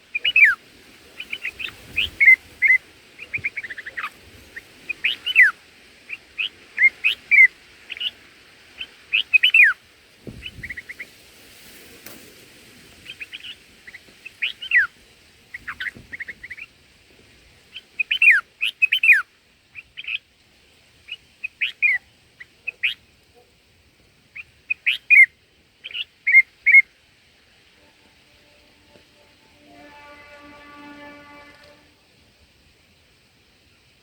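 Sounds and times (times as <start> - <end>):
bird chirping calls: 0.0 - 8.2, 24.4 - 26.9.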